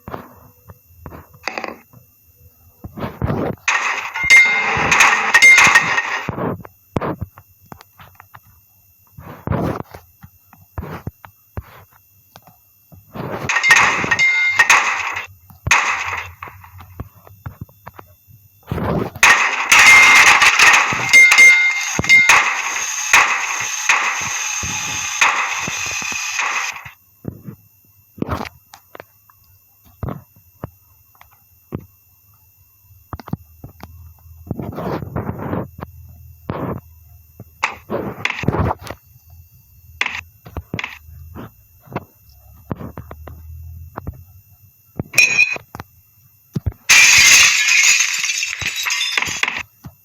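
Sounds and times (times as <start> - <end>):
low steady hum: 0.0 - 50.0
short rattling bursts: 19.2 - 26.9, 46.9 - 49.6.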